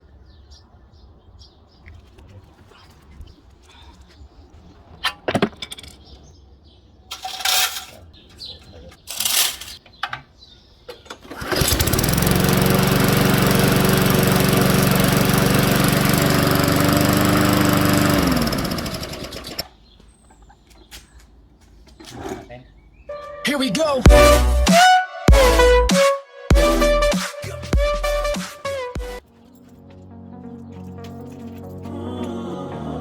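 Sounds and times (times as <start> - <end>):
recoil starter pulls rattling: 11.1 - 19.7
lawn mower engine running: 11.2 - 19.6.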